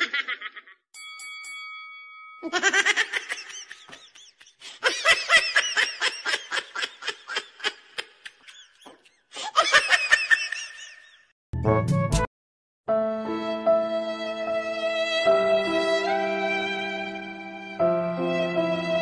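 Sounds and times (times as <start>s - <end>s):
person laughing: 0.0s - 0.8s, 2.4s - 11.2s.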